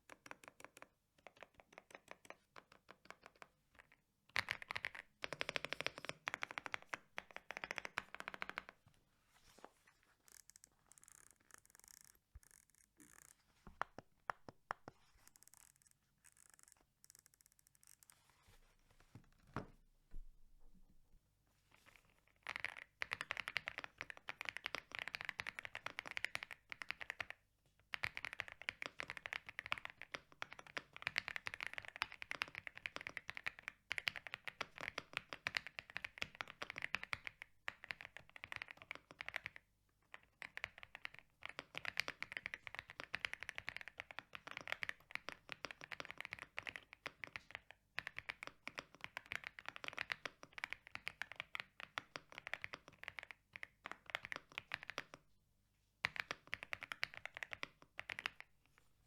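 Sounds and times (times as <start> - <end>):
typing on mechanical keyboard: 0.0 - 8.8, 22.4 - 55.2, 56.0 - 58.5.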